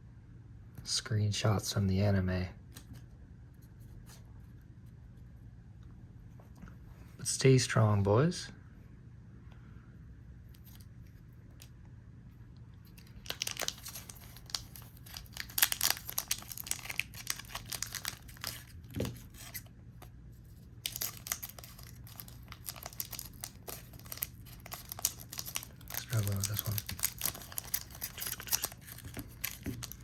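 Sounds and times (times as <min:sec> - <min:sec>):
foil wrapper crinkling and tearing: 0:12.8 - 0:19.7, 0:20.5 - 0:30.0.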